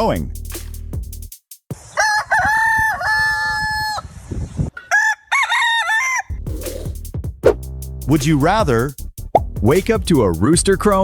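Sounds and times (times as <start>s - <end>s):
rooster crowing: 1.9s - 4.1s, 4.8s - 6.3s.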